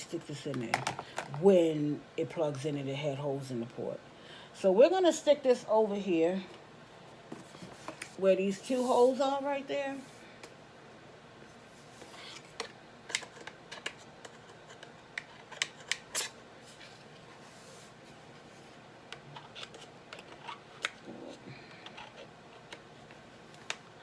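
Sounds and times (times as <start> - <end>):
plastic parts clicking and tapping: 0.6 - 1.4.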